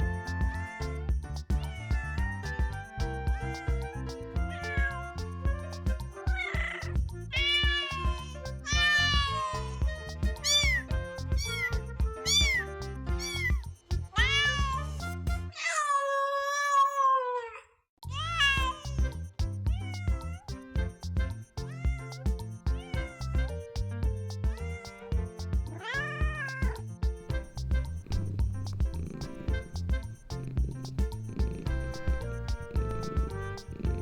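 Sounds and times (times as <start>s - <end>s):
kittens meowing: 0.0s - 15.0s, 18.1s - 20.5s, 21.6s - 23.8s, 24.4s - 26.8s
background music with low beat: 0.0s - 15.5s, 18.0s - 34.0s.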